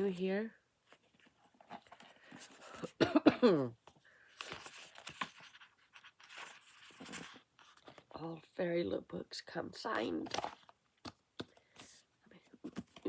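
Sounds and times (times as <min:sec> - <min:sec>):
woman coughing: 0:02.8 - 0:03.8.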